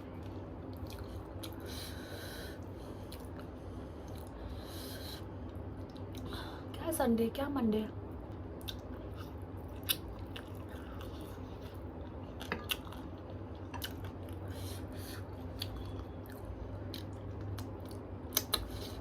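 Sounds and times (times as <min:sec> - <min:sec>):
person chewing food: 0:00.2 - 0:01.8, 0:02.6 - 0:04.4, 0:08.6 - 0:19.0.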